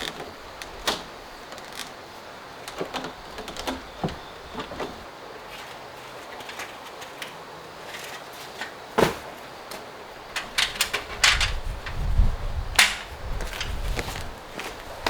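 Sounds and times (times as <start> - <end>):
repair work knocks and clicks: 9.0 - 12.0, 12.8 - 13.8.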